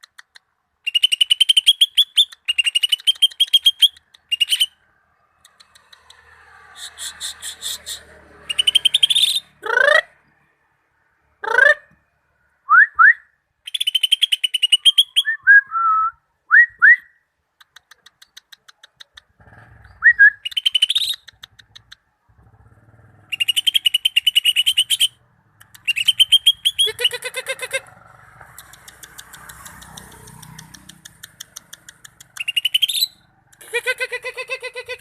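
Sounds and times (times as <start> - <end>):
bird singing whistles and trills: 0.8 - 4.8, 8.5 - 9.5, 12.7 - 17.2, 19.8 - 21.4, 23.3 - 25.2, 25.8 - 27.0, 32.4 - 33.2.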